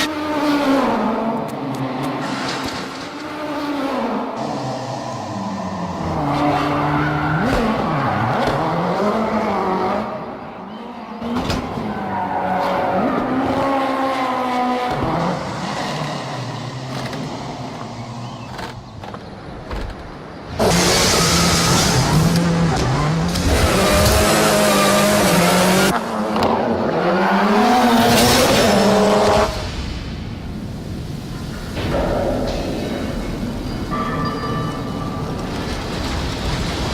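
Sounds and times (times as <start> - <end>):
rally car engine revving: 0.0 - 18.8, 19.6 - 29.8.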